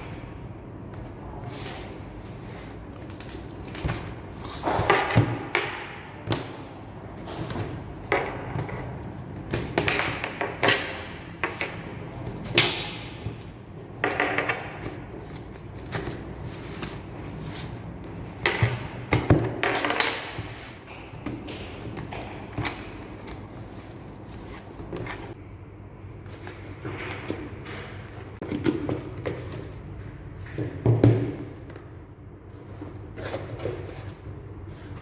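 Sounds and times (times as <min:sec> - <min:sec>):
packaging rustling: 0:26.3 - 0:31.8.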